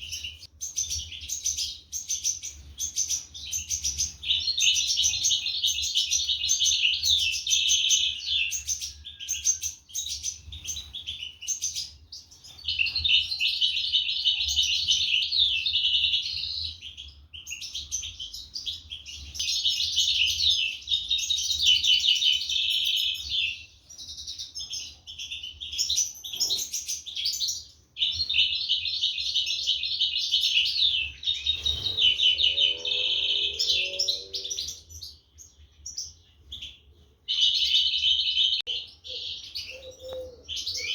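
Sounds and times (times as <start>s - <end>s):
finches twittering: 30.6s - 35.0s.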